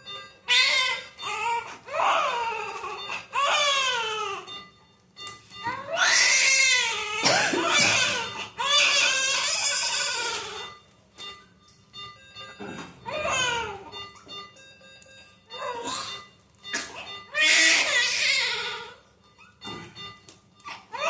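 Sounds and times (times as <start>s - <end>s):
newborn baby crying: 0.5s - 4.5s, 5.7s - 10.7s, 13.0s - 13.9s, 15.6s - 16.0s, 16.9s - 19.0s, 20.7s - 21.0s.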